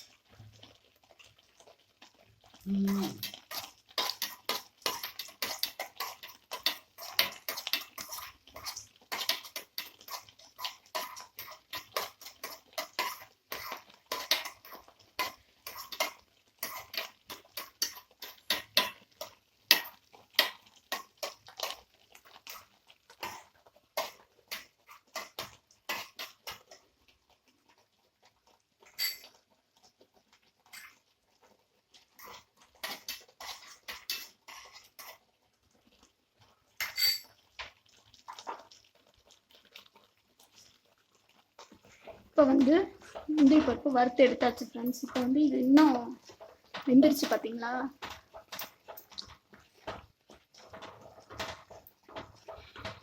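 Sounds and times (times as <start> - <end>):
metal spoon scraping a pan: 2.9 - 26.9, 28.8 - 29.4, 30.6 - 31.0, 32.0 - 35.4, 36.8 - 37.4, 41.6 - 53.0.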